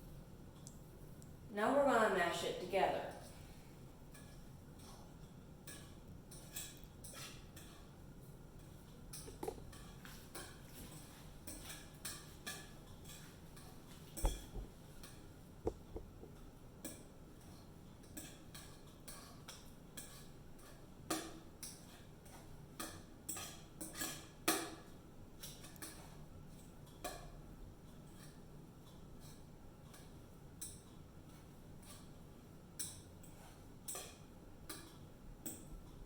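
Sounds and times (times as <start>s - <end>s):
fork tapping against a bowl: 14.2s - 17.1s.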